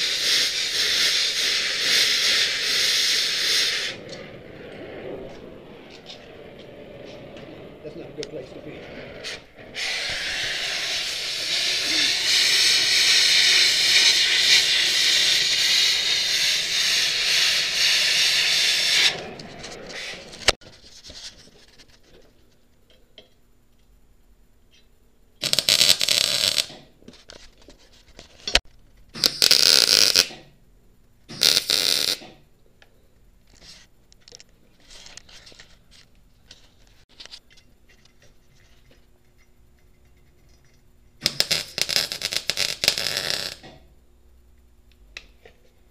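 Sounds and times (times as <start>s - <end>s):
wire brush grinder on steel: 9.2s - 19.1s.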